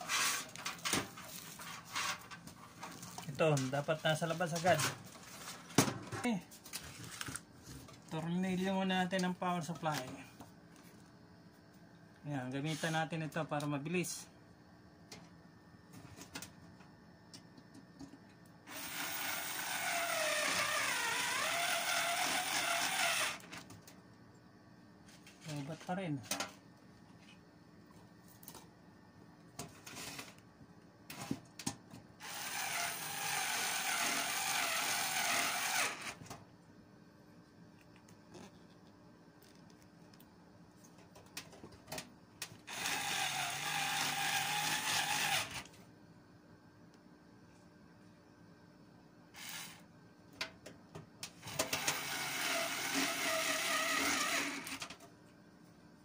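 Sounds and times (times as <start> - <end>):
electric screwdriver whirring: 18.7 - 23.5, 32.2 - 36.2, 42.7 - 45.6, 49.4 - 49.8, 51.5 - 54.8.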